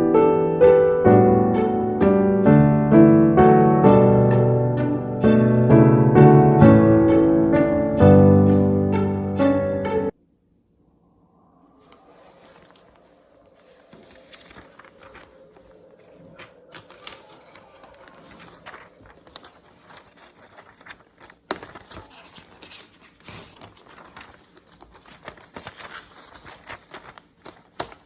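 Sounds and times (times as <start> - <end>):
paper rustling: 11.9 - 28.0.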